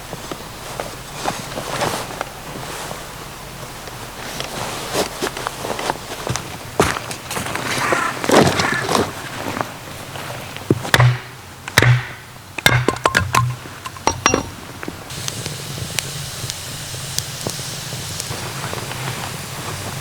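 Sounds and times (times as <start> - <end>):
low background noise: 0.0 - 20.0
camp gear knocking and clinking: 10.7 - 15.1.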